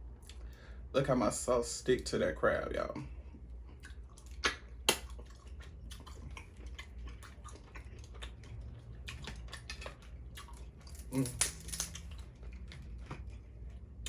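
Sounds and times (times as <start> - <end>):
chewing with mouth clicks: 3.3 - 14.0.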